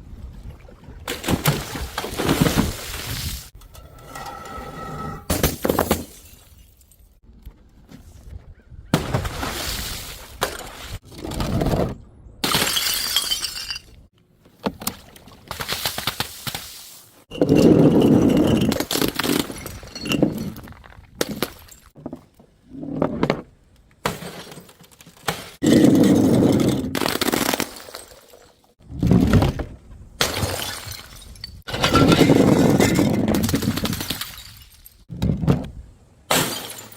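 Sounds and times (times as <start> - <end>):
glass bottles smashing: 5.3 - 7.1, 12.4 - 14.0, 17.3 - 20.7, 30.2 - 35.1, 36.3 - 36.9.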